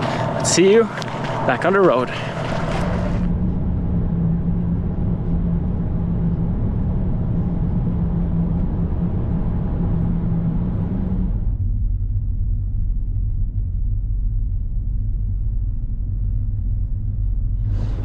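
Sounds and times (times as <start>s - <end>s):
car engine hum: 0.0s - 18.0s
road rumble: 0.0s - 18.0s.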